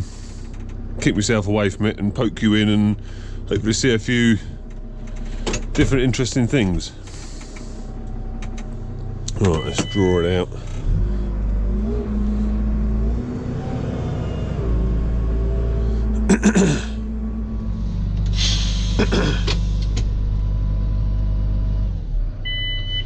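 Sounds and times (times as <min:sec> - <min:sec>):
tractor engine rumbling: 0:00.0 - 0:22.7.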